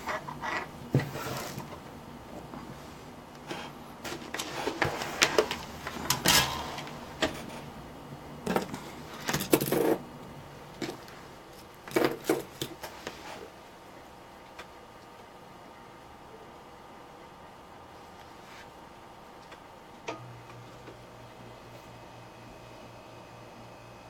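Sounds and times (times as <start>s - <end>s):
soldering tools and wires handled: 0.0s - 7.8s, 8.4s - 13.6s.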